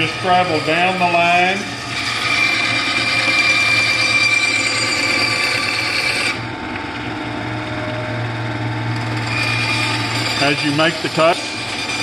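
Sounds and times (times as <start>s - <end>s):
bandsaw cutting wood: 0.0s - 6.4s, 9.0s - 12.0s
bandsaw motor hum: 0.0s - 12.0s.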